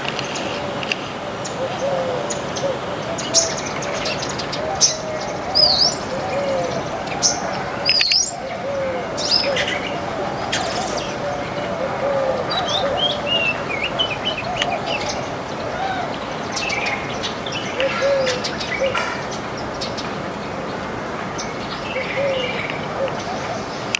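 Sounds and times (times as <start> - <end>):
birds chirping and twittering: 1.3 - 23.9
lower repeated bird call: 1.6 - 20.3.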